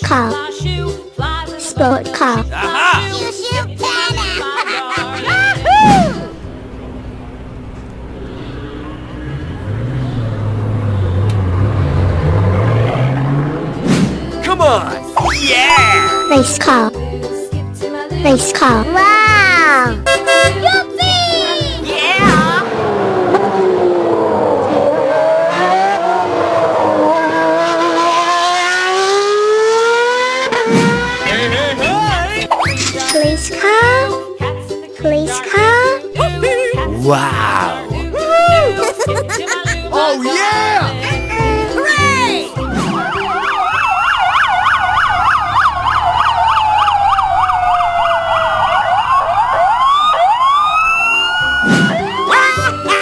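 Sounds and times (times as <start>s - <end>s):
police siren wail: 5.1s - 6.3s, 15.2s - 16.5s, 22.1s - 31.5s, 40.5s - 53.0s
police siren yelp: 5.1s - 6.3s, 15.2s - 16.5s, 41.4s - 53.0s
race car engine revving: 5.1s - 15.4s, 21.6s - 32.6s, 39.4s - 53.0s.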